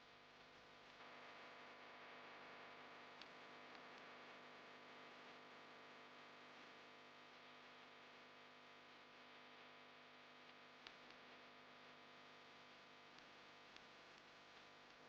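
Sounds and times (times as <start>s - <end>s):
faint tick: 3.1s - 4.2s, 10.4s - 11.2s, 13.1s - 15.0s.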